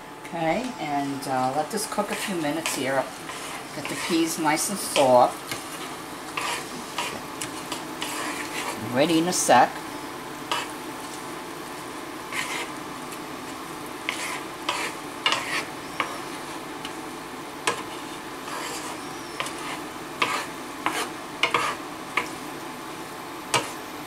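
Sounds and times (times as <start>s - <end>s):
food sizzling in a pan: 1.1s - 24.0s
utensil stirring and scraping: 1.9s - 8.9s, 10.5s - 11.2s, 12.3s - 12.8s, 13.4s - 17.0s, 17.6s - 22.4s, 23.5s - 23.8s.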